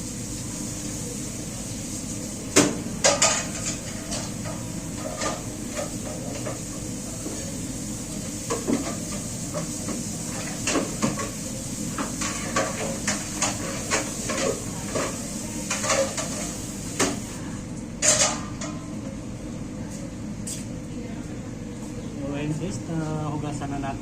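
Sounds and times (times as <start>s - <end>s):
dishes and pans clattering: 2.6s - 6.6s, 8.5s - 11.4s, 12.0s - 17.2s, 18.0s - 18.8s.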